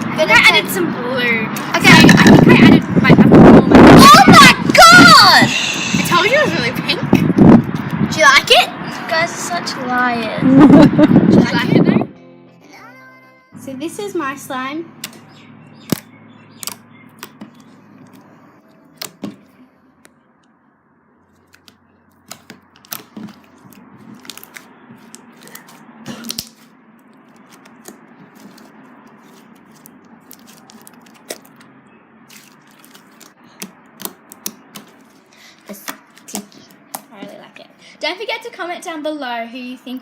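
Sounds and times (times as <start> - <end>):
slime squished by hand: 21.5 - 31.6, 32.3 - 35.2.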